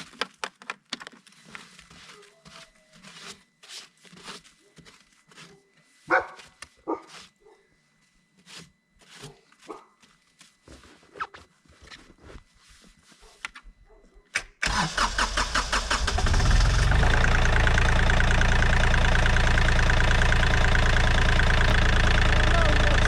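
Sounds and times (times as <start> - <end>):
diesel engine cranking and idling: 14.6 - 23.0.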